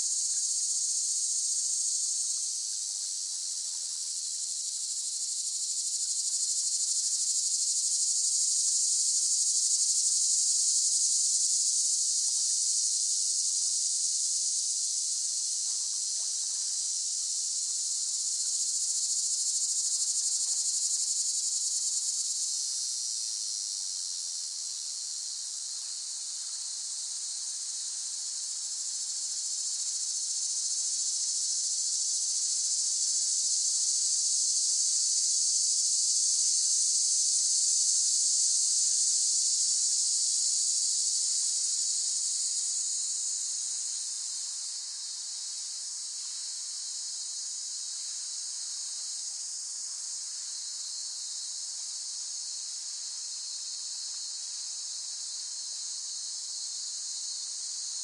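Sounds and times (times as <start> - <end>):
cicadas droning: 0.0 - 58.0.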